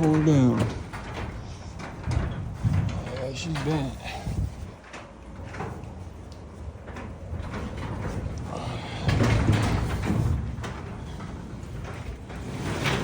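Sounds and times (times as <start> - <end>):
garage door rollers clattering: 0.0 - 13.0.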